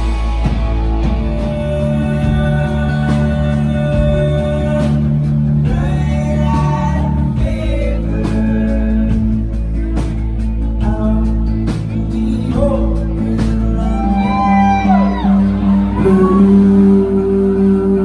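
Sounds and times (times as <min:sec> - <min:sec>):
drum beat: 0:00.0 - 0:14.8
live band playing: 0:00.0 - 0:18.0
person singing long notes: 0:10.8 - 0:18.0.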